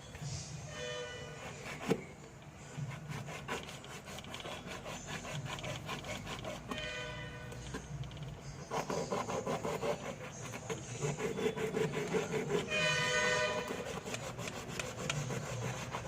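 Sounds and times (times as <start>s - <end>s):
rasping filing strokes: 2.8s - 7.2s, 8.6s - 16.0s.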